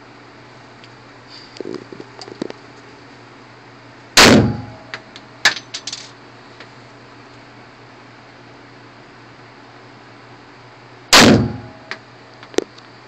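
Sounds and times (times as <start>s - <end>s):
pistol shot with echo: 4.2s - 4.8s, 11.1s - 11.8s.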